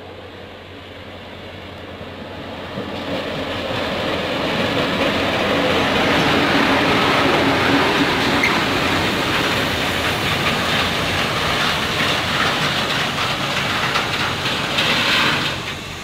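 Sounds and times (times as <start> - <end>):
diesel train rumble: 0.0 - 16.0.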